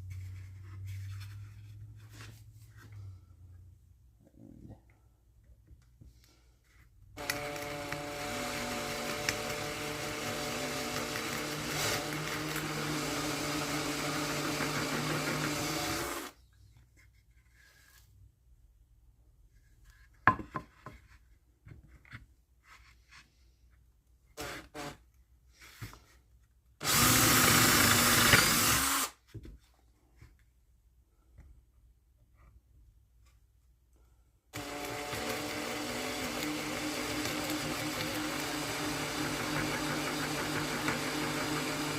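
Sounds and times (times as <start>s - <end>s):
power drill boring through wood: 7.2s - 16.4s, 24.4s - 25.0s, 26.8s - 29.2s, 34.6s - 41.9s.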